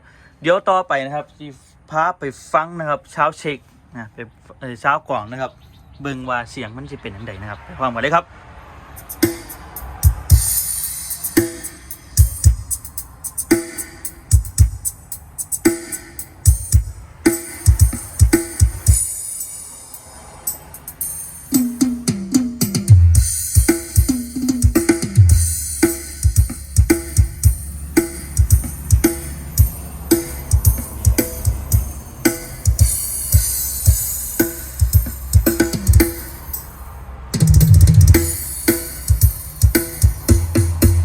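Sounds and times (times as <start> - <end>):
drum-heavy music with bass beat: 9.0 - 41.0.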